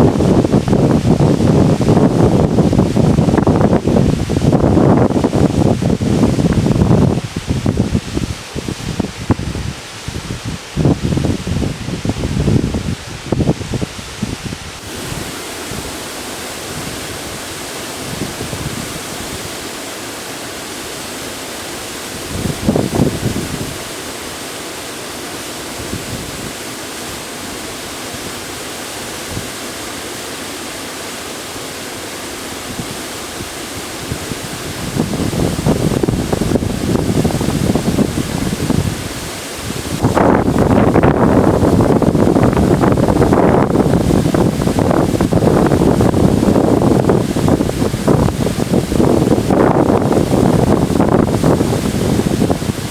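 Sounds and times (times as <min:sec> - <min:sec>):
wind buffeting microphone: 0:00.0 - 0:24.4, 0:25.4 - 0:29.6, 0:32.6 - 0:52.9
river water rushing: 0:14.6 - 0:52.9.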